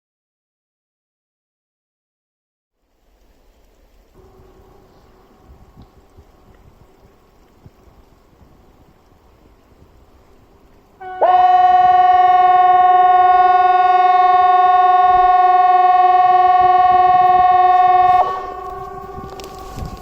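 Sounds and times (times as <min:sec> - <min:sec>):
warning siren steady tone: 0:04.2 - 0:07.0, 0:11.0 - 0:20.0.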